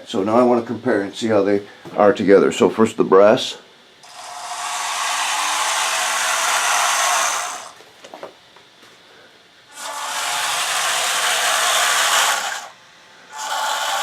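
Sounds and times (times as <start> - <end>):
electric gearboxes whirring: 4.0 - 7.8, 9.7 - 14.0.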